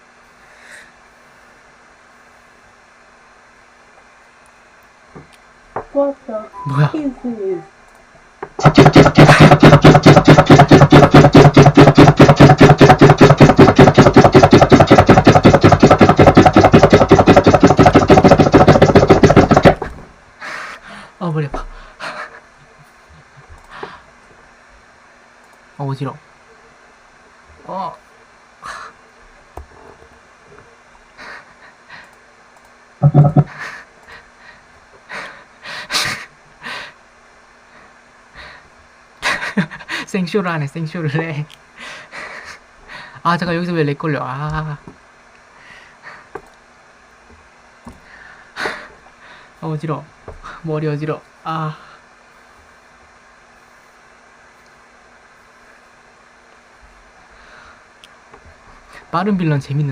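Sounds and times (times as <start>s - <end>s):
person breathing hard: 0.4s - 1.1s, 20.4s - 22.4s, 23.7s - 24.2s, 33.4s - 37.0s, 37.7s - 40.1s, 41.8s - 43.2s, 45.5s - 46.4s, 48.0s - 49.6s, 57.4s - 57.9s
rapid electronic stutter: 8.6s - 19.9s, 33.0s - 33.6s
steady low electronic tone: 33.0s - 33.5s.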